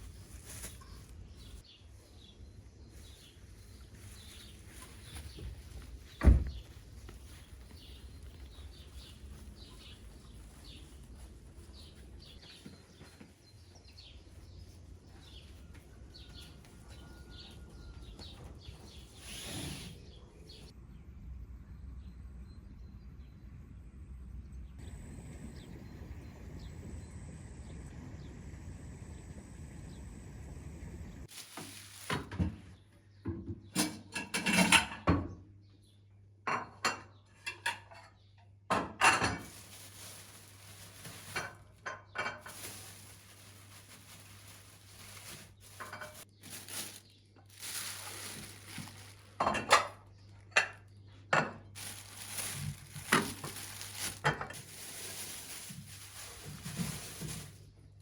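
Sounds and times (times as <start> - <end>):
faint steady hum: 20.8 - 31.3
dishes and utensils clinking: 33.8 - 35.1.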